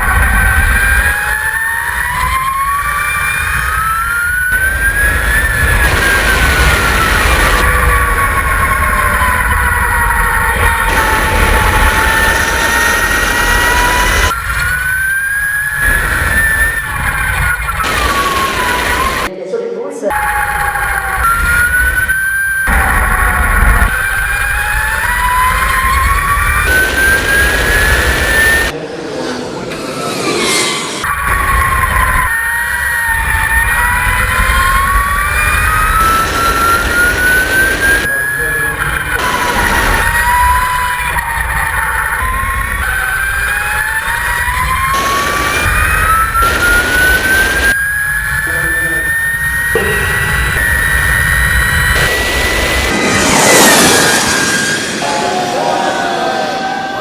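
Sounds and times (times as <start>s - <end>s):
electric motorcycle motor whining: 0.0s - 19.3s, 20.5s - 28.7s, 31.1s - 54.9s
low rumble: 50.0s - 55.7s.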